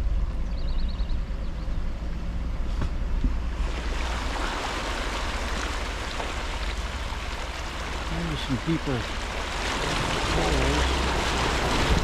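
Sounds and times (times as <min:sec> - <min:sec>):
low engine rumble: 0:00.0 - 0:12.0
water splashing and spraying: 0:03.4 - 0:12.0.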